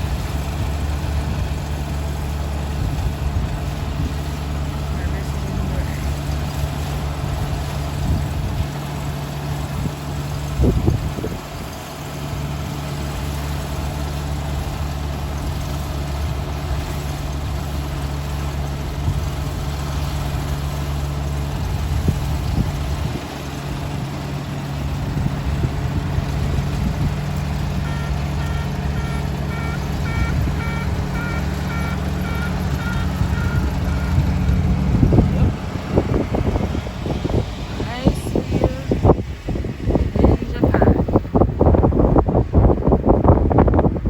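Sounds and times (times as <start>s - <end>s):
combine harvester engine running: 0.0s - 44.0s
electronic warning beep: 27.8s - 34.4s.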